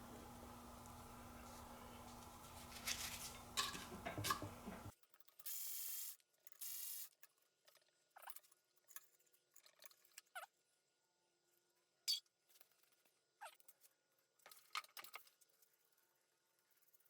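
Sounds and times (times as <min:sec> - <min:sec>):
low hum: 0:00.0 - 0:04.9.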